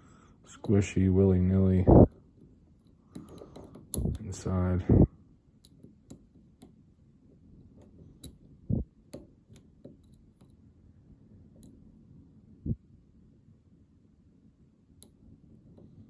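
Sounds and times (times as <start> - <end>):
lock pick metallic clicks: 2.8 - 4.3, 5.6 - 6.8, 7.8 - 8.5.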